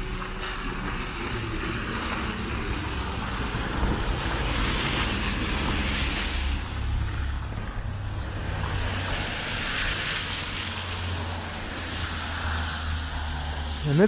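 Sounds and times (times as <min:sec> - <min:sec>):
low rumble of traffic: 0:00.0 - 0:14.0
car tyres hissing on snow: 0:00.5 - 0:07.5, 0:08.1 - 0:14.0.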